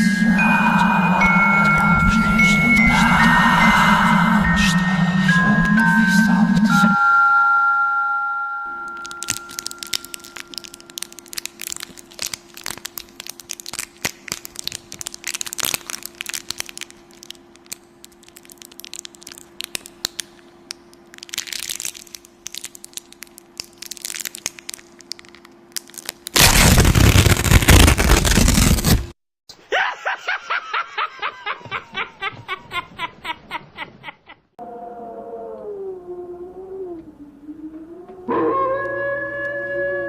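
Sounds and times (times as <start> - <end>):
hissing swells: 0.0 - 7.0
faint steady hum: 0.0 - 27.3
crackling and crunching: 8.9 - 29.1.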